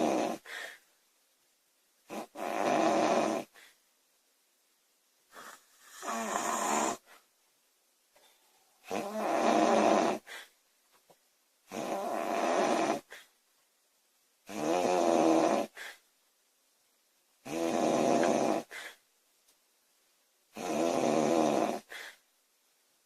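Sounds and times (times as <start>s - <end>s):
woman snoring loudly: 0.0s - 0.5s, 2.1s - 3.6s, 5.9s - 7.0s, 8.9s - 10.3s, 11.7s - 13.1s, 14.5s - 15.8s, 17.4s - 18.7s, 20.6s - 21.9s
short breaths: 0.4s - 0.9s, 10.2s - 10.6s, 18.6s - 19.1s, 21.8s - 22.3s.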